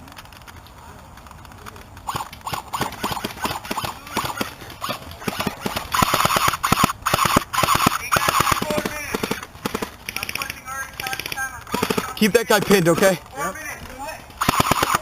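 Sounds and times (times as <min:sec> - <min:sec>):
airsoft gun firing bursts: 0:02.0 - 0:13.2, 0:14.4 - 0:15.0
gun motor whine: 0:02.1 - 0:08.6.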